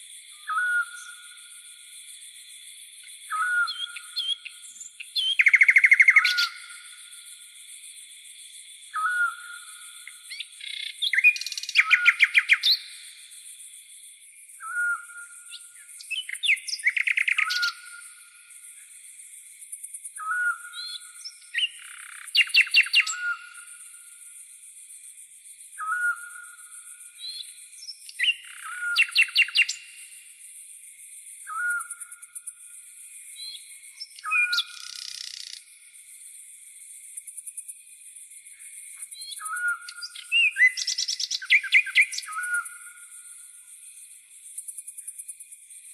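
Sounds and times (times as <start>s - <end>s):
crickets droning: 0.0s - 45.9s
rapid trilled bird chirps: 3.6s - 6.6s, 39.2s - 43.0s.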